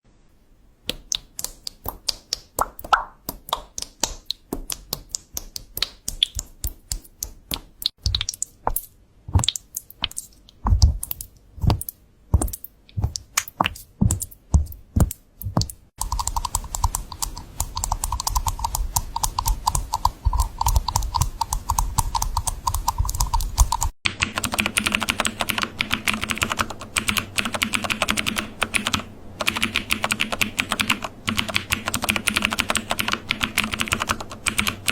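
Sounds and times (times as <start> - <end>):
computer keyboard typing: 9.4 - 34.9.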